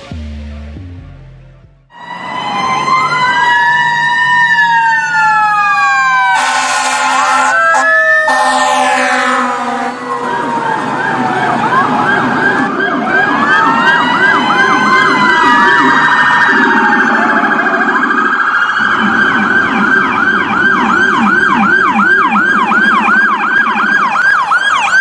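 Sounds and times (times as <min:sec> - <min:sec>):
low-pitched repeating siren tone: 0:00.0 - 0:25.0
siren wail: 0:01.9 - 0:25.0
siren yelp sweeps: 0:01.9 - 0:25.0.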